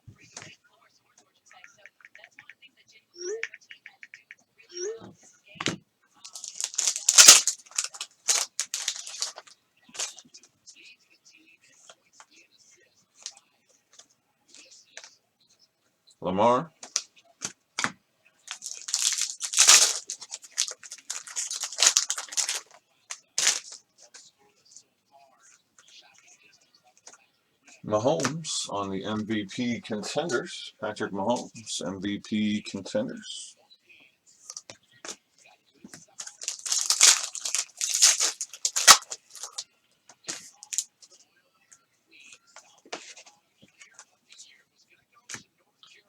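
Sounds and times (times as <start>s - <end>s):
wrapper crinkling and tearing: 6.3s - 10.1s, 18.5s - 22.7s, 23.4s - 23.8s, 36.2s - 39.6s, 40.6s - 40.9s
cards rustling and scraping: 6.3s - 10.2s, 16.8s - 24.3s, 28.0s - 31.7s, 34.4s - 35.2s, 35.9s - 39.6s, 40.2s - 40.9s.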